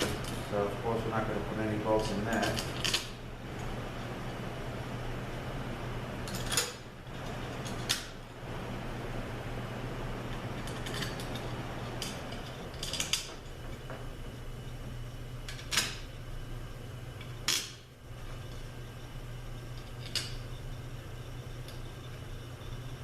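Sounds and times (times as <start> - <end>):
steady low hum: 0.0 - 23.0
small metal parts clinking: 6.2 - 8.1, 10.3 - 13.9, 19.8 - 20.4.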